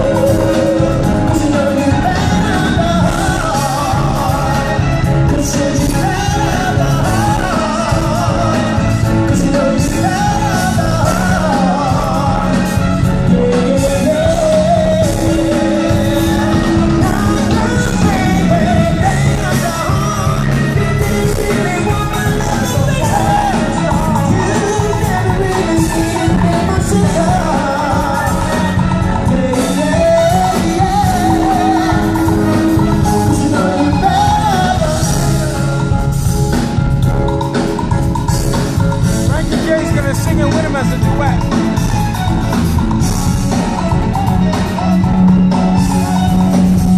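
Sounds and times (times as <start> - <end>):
person singing: 0.0 - 36.8
dance-pop song over sound system: 0.0 - 46.9
steady drum beat: 0.0 - 46.9.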